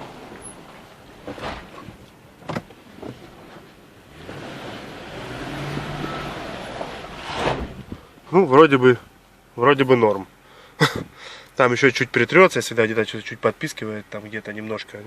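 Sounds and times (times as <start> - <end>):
tyre and road noise: 0.0 - 9.2.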